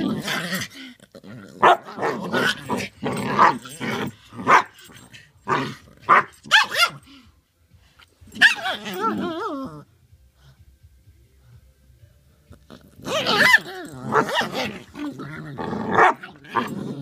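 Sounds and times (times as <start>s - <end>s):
dog barking and growling: 0.0s - 7.2s, 8.2s - 10.0s, 12.5s - 17.0s
dog wavering warbling cry: 8.4s - 9.8s, 13.1s - 15.0s.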